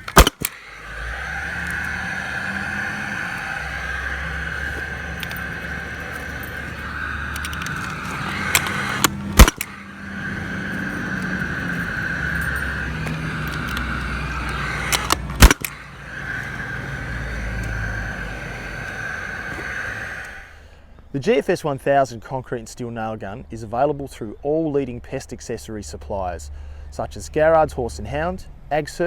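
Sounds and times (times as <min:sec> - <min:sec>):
nail gun firing: 0:00.0 - 0:00.6, 0:07.4 - 0:09.8, 0:14.5 - 0:15.8
steady hum: 0:00.0 - 0:20.7
small clicks: 0:07.3 - 0:09.7, 0:10.8 - 0:16.6.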